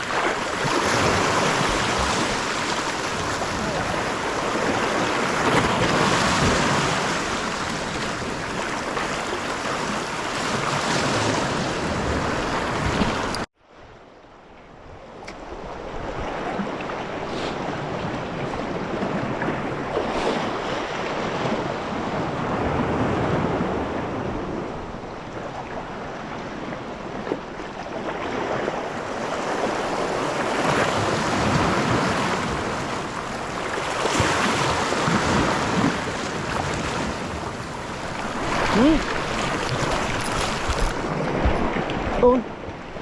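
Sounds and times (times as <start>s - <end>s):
waves breaking on rocky shore: 0.0s - 13.5s, 15.4s - 43.0s
wind buffeting microphone: 28.1s - 43.0s.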